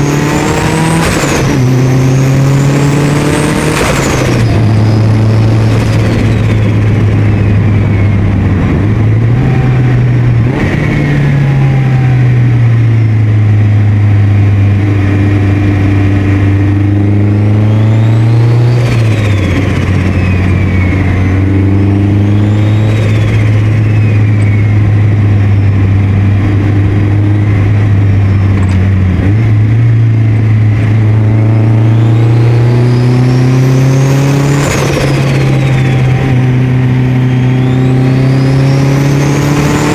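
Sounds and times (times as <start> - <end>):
car engine under boost: 0.0 - 39.9
turbo whistle: 16.8 - 28.7, 31.6 - 39.9.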